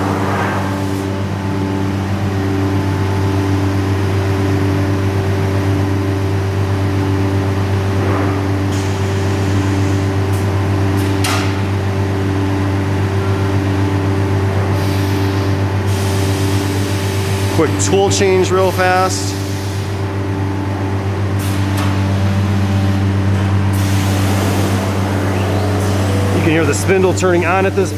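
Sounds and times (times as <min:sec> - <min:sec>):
router machine hum: 0:16.6 - 0:27.9.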